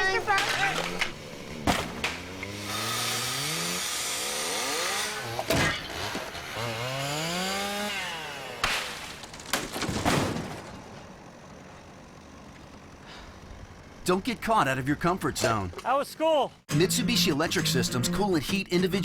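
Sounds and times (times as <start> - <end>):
chainsaw revving: 0.0 - 9.1
sharp cracks and knocks: 0.3 - 6.7, 8.5 - 11.2.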